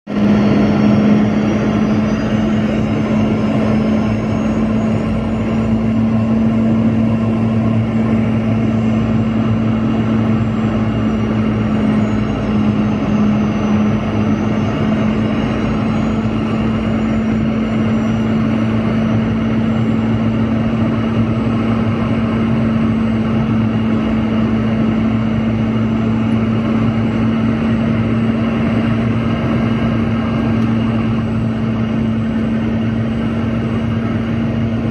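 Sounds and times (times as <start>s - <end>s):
jet engines running: 0.1s - 34.9s.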